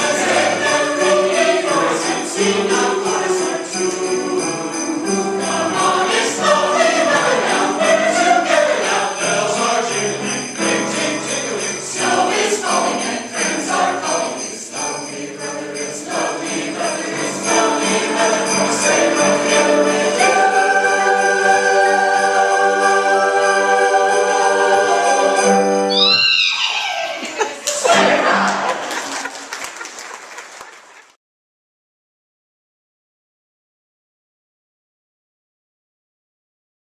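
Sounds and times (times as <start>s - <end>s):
jingle bells shaken: 0.0s - 25.9s
choir singing: 0.0s - 29.2s.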